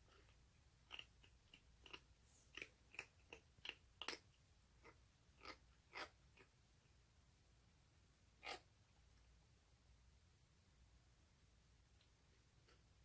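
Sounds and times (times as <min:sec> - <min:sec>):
kitten crunching food: 0:00.0 - 0:06.6, 0:08.4 - 0:08.7.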